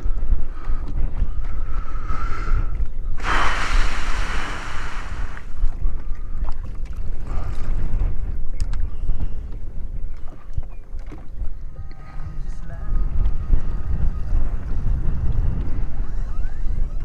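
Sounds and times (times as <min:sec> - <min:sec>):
wind rumbling on microphone: 0:00.0 - 0:17.0
loud rush of hiss: 0:03.2 - 0:05.6.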